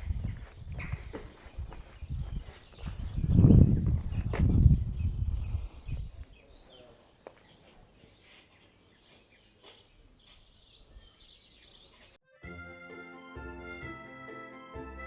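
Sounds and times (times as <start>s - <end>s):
background music: 12.2s - 15.0s.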